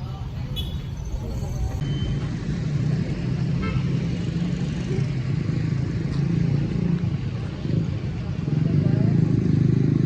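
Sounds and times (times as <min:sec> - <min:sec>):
road noise: 0:00.0 - 0:10.0.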